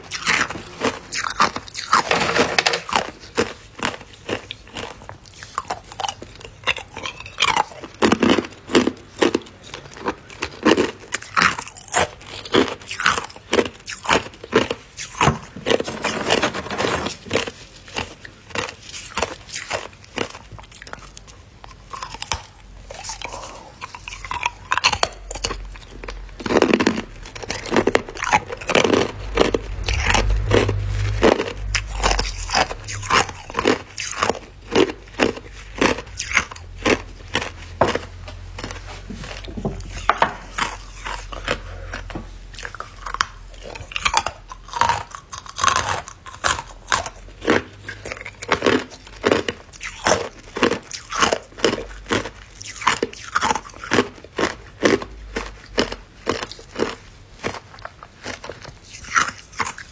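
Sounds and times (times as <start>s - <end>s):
ice crunching between teeth: 17.0s - 59.9s.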